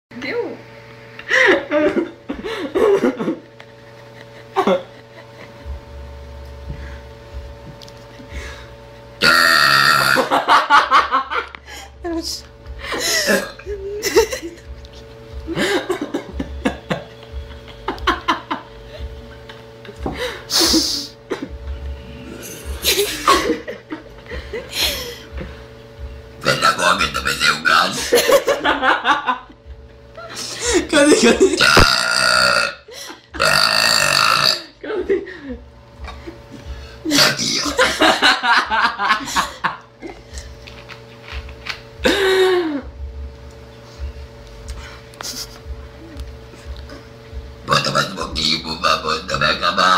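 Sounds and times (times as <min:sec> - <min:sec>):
girl laughing and giggling: 0:01.2 - 0:05.8, 0:10.2 - 0:21.6, 0:22.6 - 0:25.5, 0:28.0 - 0:29.6, 0:30.2 - 0:31.6, 0:34.8 - 0:40.5, 0:45.2 - 0:47.1
girl burping: 0:09.2 - 0:10.3, 0:13.3 - 0:13.7, 0:31.5 - 0:34.8.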